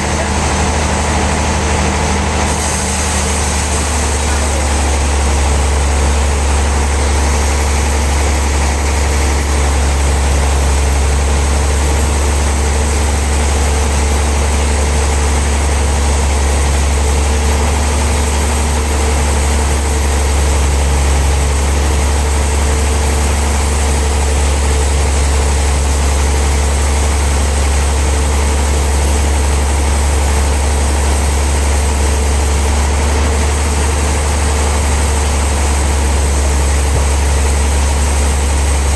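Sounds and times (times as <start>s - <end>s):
sawmill machinery drone: 0.0s - 38.9s.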